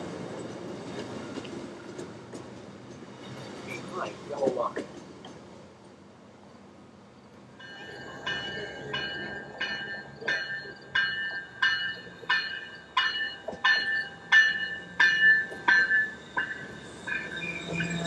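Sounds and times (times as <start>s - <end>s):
train rumbling: 0.0s - 18.0s
railroad warning bell ringing: 7.6s - 18.0s.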